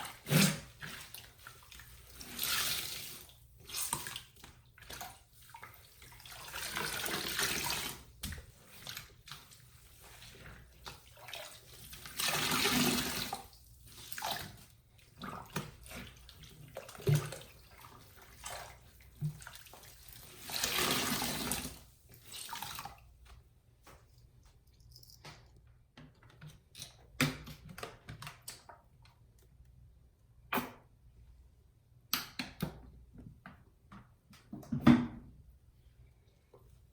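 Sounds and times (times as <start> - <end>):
water gushing: 0.0 - 4.0, 10.6 - 13.5, 19.6 - 21.8
wet sponges squeezed: 0.0 - 23.2.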